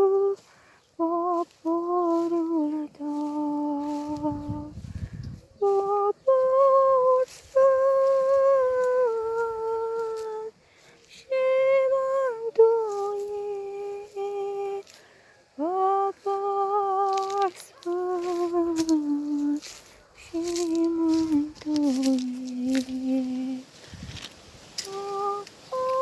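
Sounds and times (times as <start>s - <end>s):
woman humming: 0.0s - 0.4s, 1.0s - 10.5s, 11.2s - 14.9s, 15.6s - 23.7s, 24.8s - 26.0s
woman breathing: 0.5s - 0.9s, 10.5s - 11.3s, 15.0s - 15.6s.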